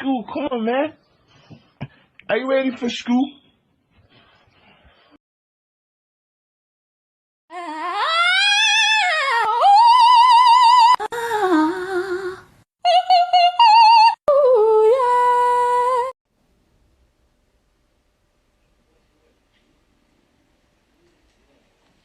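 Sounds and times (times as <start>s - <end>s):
high-pitched singing with vibrato: 7.5s - 16.2s.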